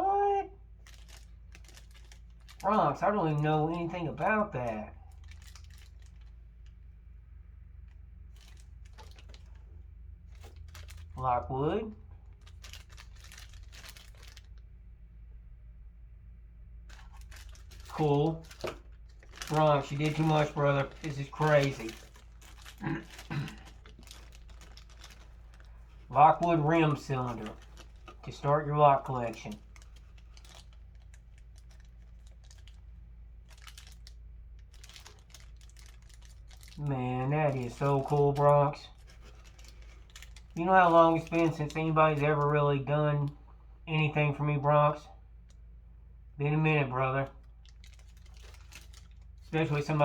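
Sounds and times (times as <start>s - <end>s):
low steady hum: 0.0s - 50.0s
packaging rustling: 0.8s - 2.8s, 5.1s - 6.4s, 8.3s - 11.2s, 12.3s - 14.6s, 16.9s - 42.5s, 47.4s - 50.0s.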